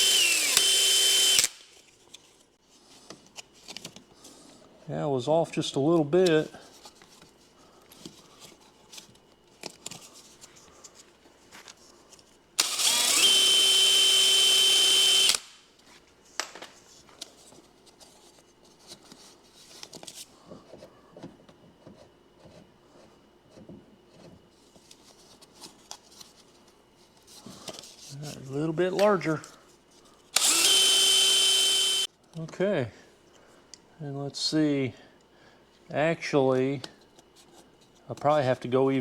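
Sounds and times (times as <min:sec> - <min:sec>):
power drill whining: 0:00.0 - 0:01.6, 0:12.6 - 0:15.4, 0:30.4 - 0:32.1.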